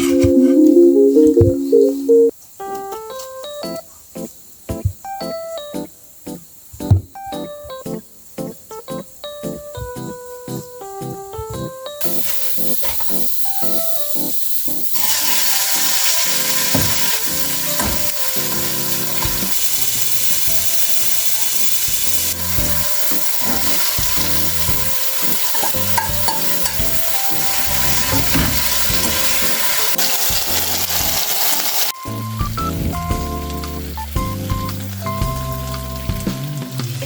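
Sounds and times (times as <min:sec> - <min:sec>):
food sizzling in a pan: 0:12.0 - 0:37.0.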